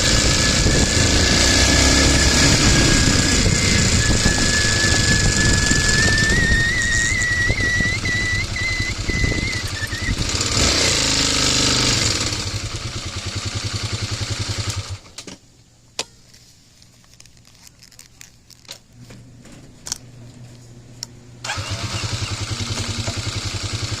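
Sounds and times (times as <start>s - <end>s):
brakes squealing: 0.0s - 12.5s
vehicle engine idling: 0.0s - 15.0s, 21.4s - 24.0s.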